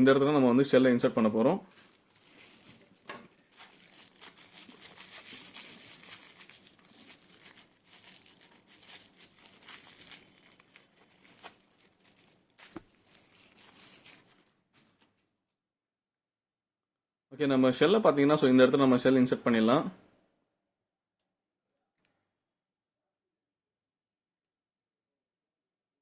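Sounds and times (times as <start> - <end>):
faint rustling: 1.7 - 15.1.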